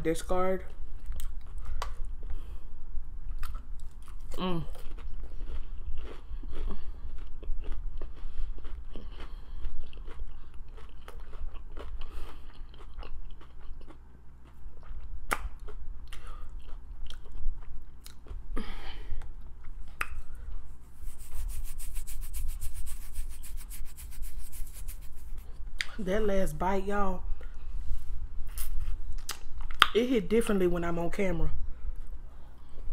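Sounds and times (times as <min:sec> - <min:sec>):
person chewing and biting food: 0:01.0 - 0:02.4, 0:03.2 - 0:25.9
low hum: 0:14.1 - 0:29.8.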